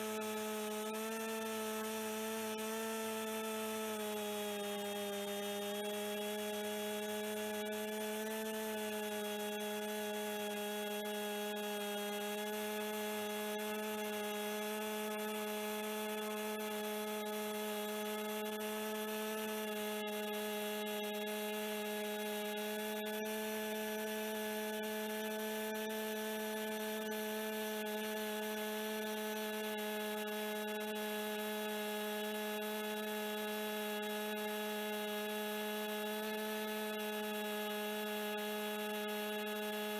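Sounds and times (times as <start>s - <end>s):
chainsaw cutting log: 1.0s - 8.7s.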